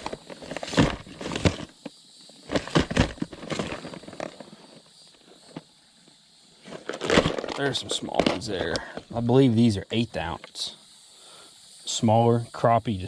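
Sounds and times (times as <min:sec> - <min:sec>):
rummaging through fishing tackle: 0:00.0 - 0:01.8, 0:02.4 - 0:04.6, 0:06.6 - 0:09.2.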